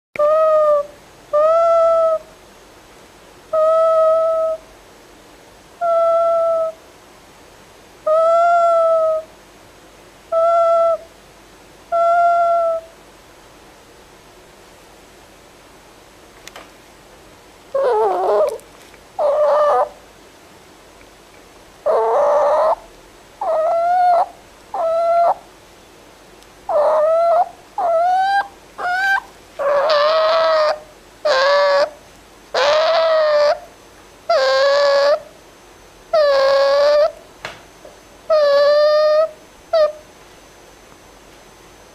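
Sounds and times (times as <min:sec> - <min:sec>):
fox whining calls: 0:00.2 - 0:02.3, 0:03.5 - 0:04.7, 0:05.8 - 0:06.8, 0:08.0 - 0:09.3, 0:10.3 - 0:11.1, 0:11.9 - 0:13.0, 0:17.7 - 0:18.6, 0:19.2 - 0:20.0, 0:21.8 - 0:25.5, 0:26.7 - 0:33.7, 0:34.3 - 0:35.3, 0:36.1 - 0:37.2, 0:38.2 - 0:40.1.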